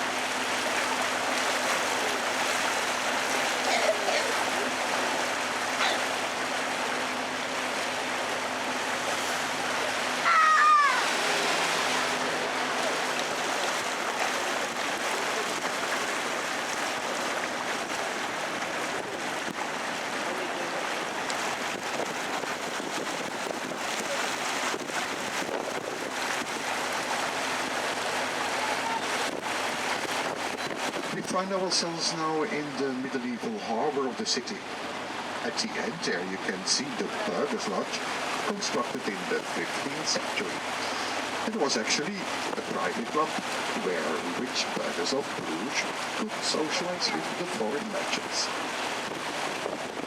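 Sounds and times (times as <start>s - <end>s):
boat motor hum: 0.0s - 50.0s
water rushing: 0.0s - 50.0s.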